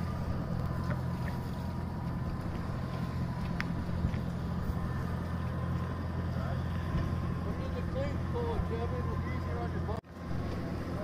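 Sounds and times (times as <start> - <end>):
boat engine running: 0.0 - 11.0.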